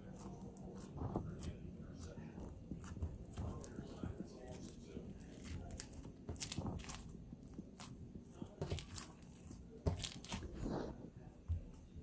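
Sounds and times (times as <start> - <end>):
slime squished by hand: 2.3 - 10.9
slime popping: 2.4 - 7.9.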